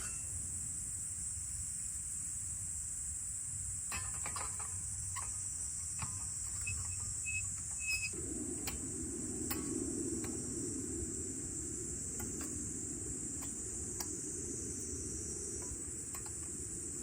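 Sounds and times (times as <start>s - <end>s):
insects buzzing: 0.0s - 17.0s
low rushing noise: 8.1s - 17.0s.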